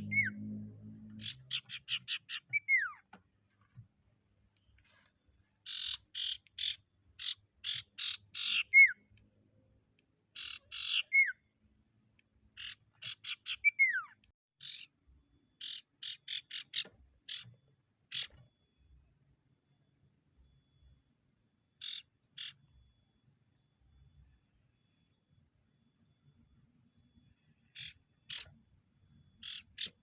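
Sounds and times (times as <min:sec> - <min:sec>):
bird downward-sliding whistle: 0:00.0 - 0:00.5.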